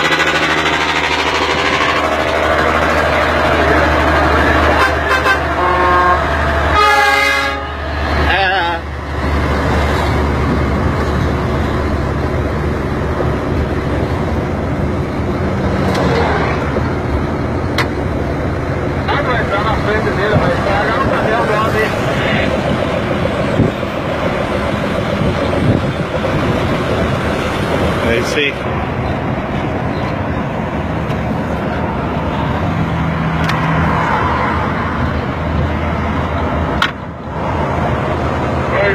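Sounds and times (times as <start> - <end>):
car engine droning: 0.0 - 38.9
tyre and road noise: 0.0 - 38.9
tyre and wind noise: 22.5 - 38.6.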